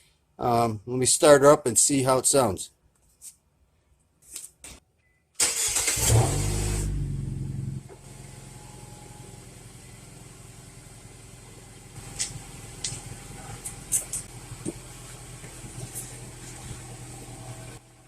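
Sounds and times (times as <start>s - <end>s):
car engine starting and idling: 5.4s - 18.0s.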